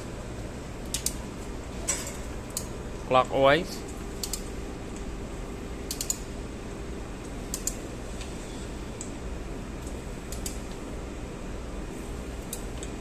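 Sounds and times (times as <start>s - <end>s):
steady low hum: 0.0s - 13.0s
ratchet wrench clicking: 5.9s - 6.2s, 7.5s - 7.8s.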